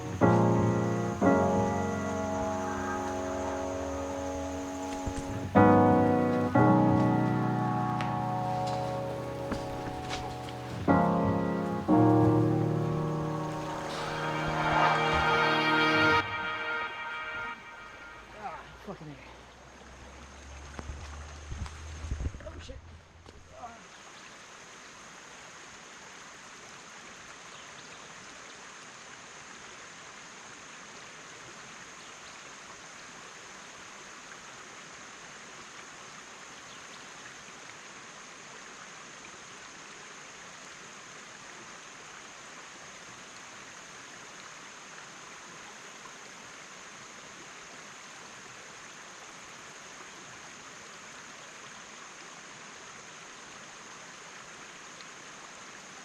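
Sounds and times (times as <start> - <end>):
river water rushing over rocks: 0.0 - 18.9.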